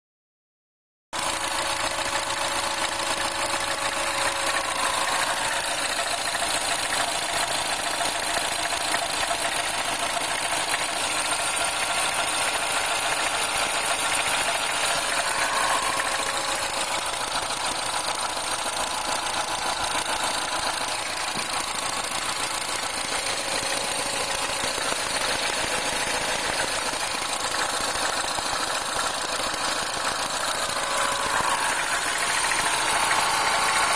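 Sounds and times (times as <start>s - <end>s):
car engine idling: 1.2s - 33.9s.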